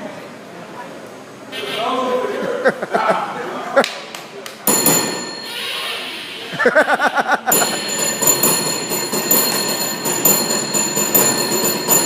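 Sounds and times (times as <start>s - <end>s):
cable car bell ringing: 4.7s - 6.1s, 7.5s - 12.0s.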